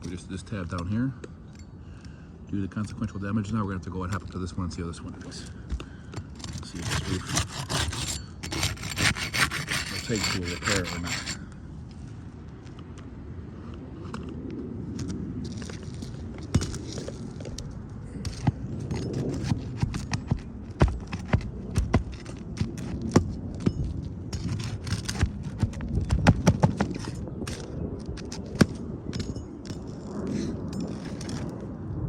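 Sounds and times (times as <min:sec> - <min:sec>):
footsteps on shingle roof: 0:15.5 - 0:28.8
boots and tools knocking: 0:18.3 - 0:29.4.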